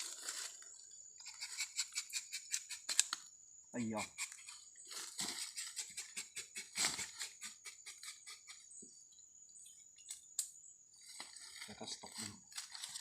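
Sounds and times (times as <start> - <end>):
knife scraping tree bark: 1.2 - 3.1.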